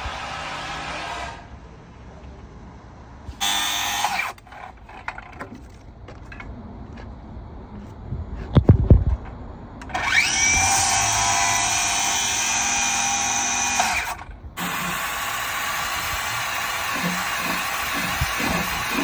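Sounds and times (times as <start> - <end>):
power tool motor whine: 3.3 - 4.3, 9.9 - 19.0
steady machine noise: 9.9 - 19.0.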